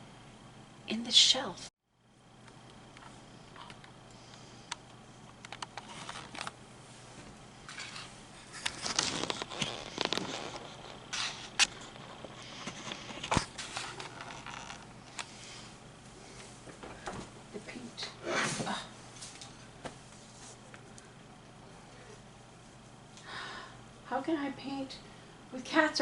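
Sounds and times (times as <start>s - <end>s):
rustling and scraping: 5.8s - 17.4s, 18.3s - 20.8s.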